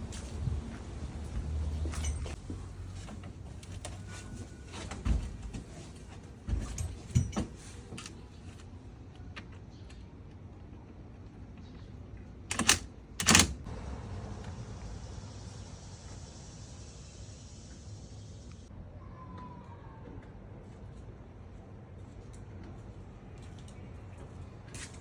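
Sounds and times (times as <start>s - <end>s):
light knocks and clatters: 1.8s - 8.6s.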